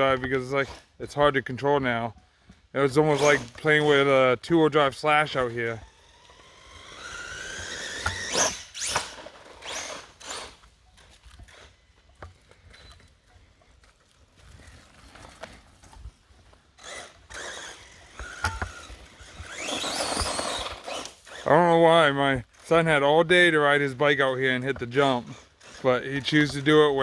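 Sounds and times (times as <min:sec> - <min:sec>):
knocks and rattles on dirt: 0:00.0 - 0:27.0
toy truck electric motor whining: 0:02.8 - 0:13.2, 0:16.4 - 0:23.0, 0:24.8 - 0:27.0.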